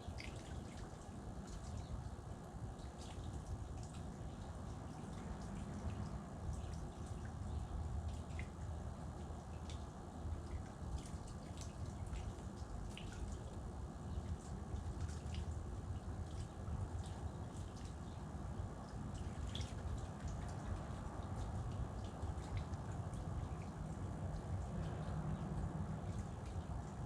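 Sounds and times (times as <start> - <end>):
low steady rumble: 0.0 - 27.0.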